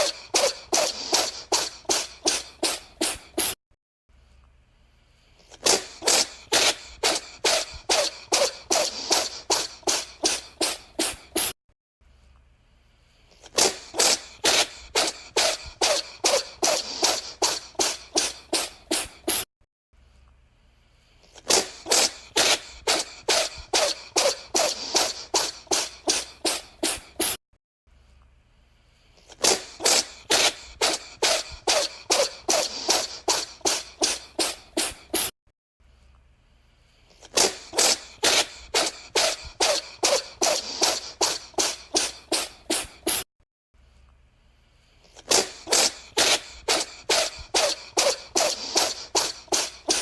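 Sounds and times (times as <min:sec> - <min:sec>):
cat sneezing: 0:00.0 - 0:03.6, 0:05.4 - 0:11.6, 0:13.4 - 0:19.5, 0:21.3 - 0:27.4, 0:29.2 - 0:35.4, 0:37.2 - 0:43.3, 0:45.1 - 0:50.0.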